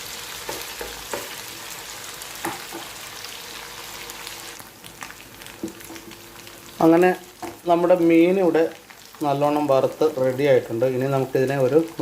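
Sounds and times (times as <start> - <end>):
fish sizzling in hot oil: 0.0 - 12.0
utensil tapping and scraping pan: 0.4 - 1.4.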